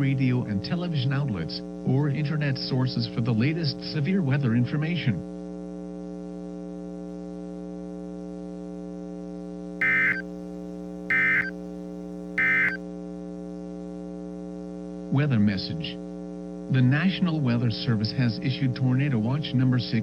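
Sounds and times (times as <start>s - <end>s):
buzzy tones: 9.8s - 10.2s, 11.1s - 11.5s, 12.4s - 12.8s
digital data tone bursts: 9.8s - 10.2s, 11.1s - 11.5s, 12.4s - 12.8s
electrical hum: 9.8s - 12.8s.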